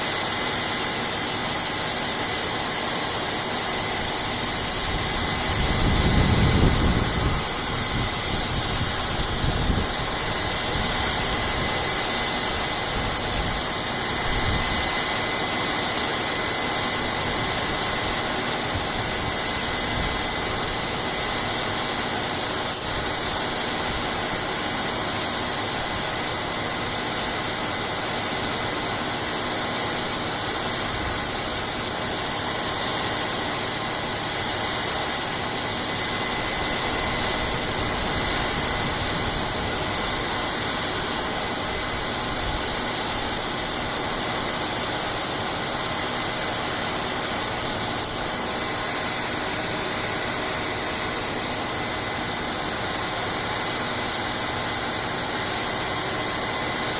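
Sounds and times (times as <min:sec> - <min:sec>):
combine harvester running: 0:00.0 - 0:56.9
high machine whine: 0:00.0 - 0:56.9.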